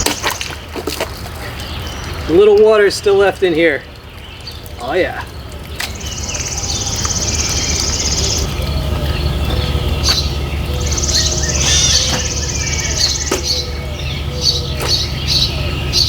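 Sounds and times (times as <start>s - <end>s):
birds chirping: 0.0s - 16.0s
steady low rumble: 5.3s - 16.0s
buzzy high bird trill: 6.0s - 16.0s.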